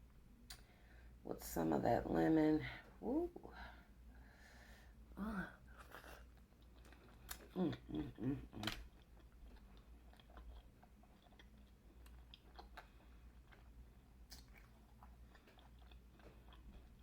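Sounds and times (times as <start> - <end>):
chewing: 5.7 - 17.0
wet mouth clicks: 14.3 - 14.7.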